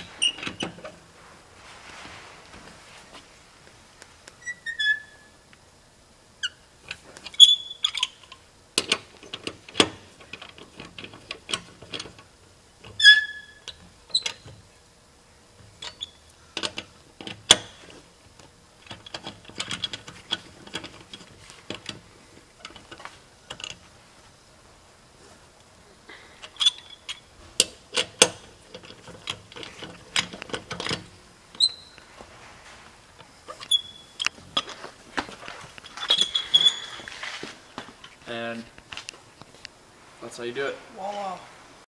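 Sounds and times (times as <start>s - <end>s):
high squeaks: 0.0s - 0.9s, 4.4s - 5.4s, 7.3s - 8.2s, 13.0s - 14.4s, 31.5s - 32.1s, 33.5s - 34.4s, 35.8s - 37.6s
wrench clanking on lug nuts: 18.8s - 22.0s, 26.4s - 32.0s.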